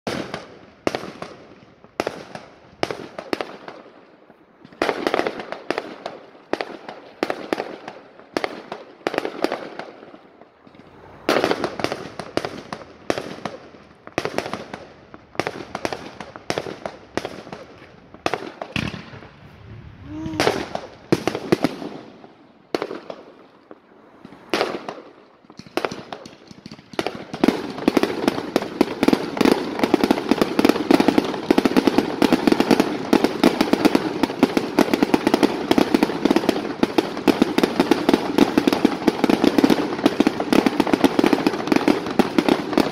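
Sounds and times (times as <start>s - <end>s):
fireworks bangs: 0.1s - 42.9s
rising firework whistle: 9.7s - 13.8s, 18.7s - 22.2s.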